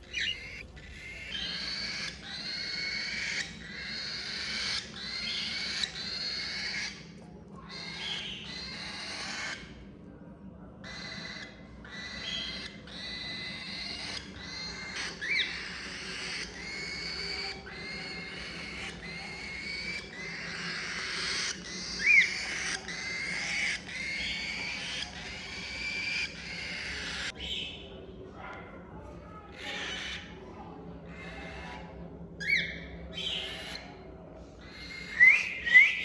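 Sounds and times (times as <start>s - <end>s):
cockatiels calling: 0.0s - 9.8s, 10.8s - 27.8s, 29.5s - 30.4s, 31.1s - 31.8s, 32.4s - 34.0s, 34.6s - 36.0s.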